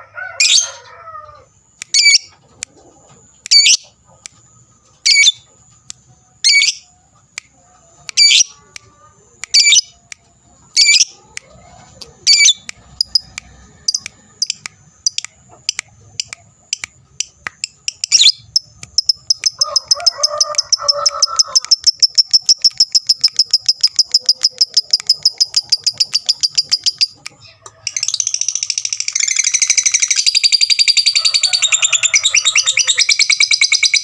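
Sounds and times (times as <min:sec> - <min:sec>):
lovebird calling: 0:01.9 - 0:02.3, 0:03.4 - 0:03.8, 0:05.0 - 0:05.4, 0:06.4 - 0:06.8, 0:10.8 - 0:11.2, 0:12.2 - 0:16.9, 0:17.7 - 0:19.8
lovebird chattering trill: 0:01.9 - 0:02.3, 0:03.5 - 0:03.9, 0:05.0 - 0:05.4, 0:06.4 - 0:06.8, 0:08.1 - 0:08.6, 0:09.5 - 0:09.9, 0:10.8 - 0:11.2, 0:12.2 - 0:27.2, 0:27.8 - 0:34.0.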